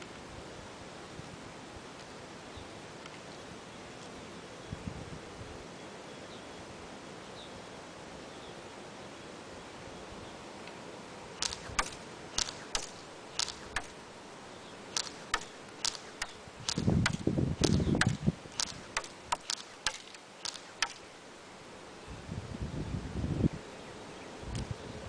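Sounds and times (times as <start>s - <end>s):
airsoft gun shots clicking: 11.4s - 14.0s, 14.9s - 21.1s.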